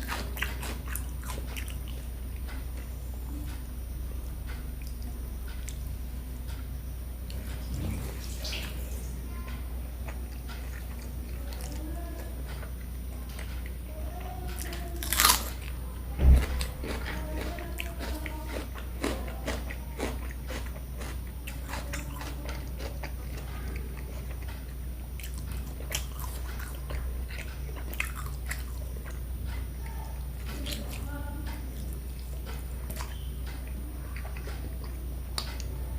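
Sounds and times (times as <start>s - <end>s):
person chewing crunchy food: 0.0s - 2.9s, 10.0s - 11.7s, 14.6s - 29.7s, 31.8s - 35.7s
loud low thump: 16.2s - 16.6s.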